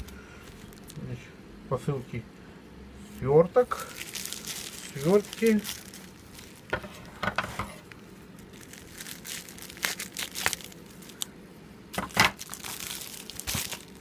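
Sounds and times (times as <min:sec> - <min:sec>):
packaging crinkling and tearing: 0:03.7 - 0:06.9, 0:07.8 - 0:11.3, 0:11.9 - 0:14.0.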